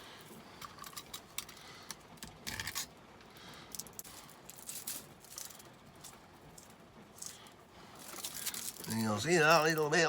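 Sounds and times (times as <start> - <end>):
cable jacket scratching and rustling: 3.9 - 10.0.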